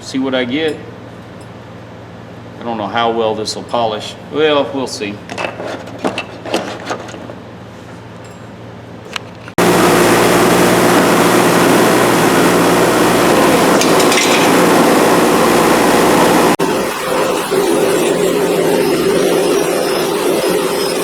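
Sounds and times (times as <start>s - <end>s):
bench grinder motor hum: 9.6s - 16.6s
wire wheel scrubbing metal: 9.6s - 20.0s.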